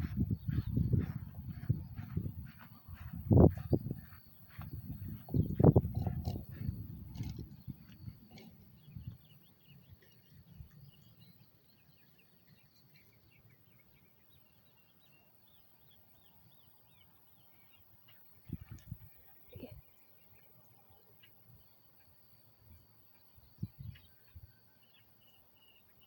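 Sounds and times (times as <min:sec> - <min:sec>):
low bumps: 0:00.0 - 0:09.2
distant small birds chirping: 0:00.0 - 0:26.0.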